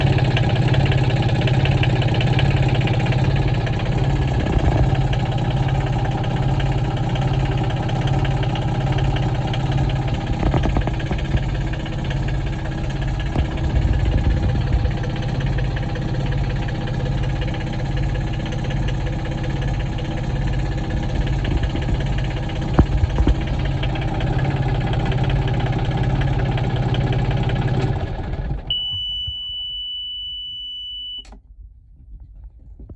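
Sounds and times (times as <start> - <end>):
marine diesel engine idling: 0.0 - 29.2
high-pitched beep: 28.7 - 31.3.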